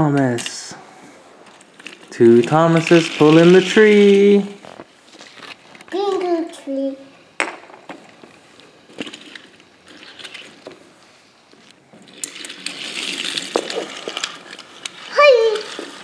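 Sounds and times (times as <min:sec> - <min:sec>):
toy train pieces clicking: 0:00.1 - 0:00.7, 0:01.4 - 0:04.5, 0:08.9 - 0:10.6, 0:12.1 - 0:16.0
scraping and rustling: 0:00.3 - 0:06.8, 0:07.8 - 0:16.0.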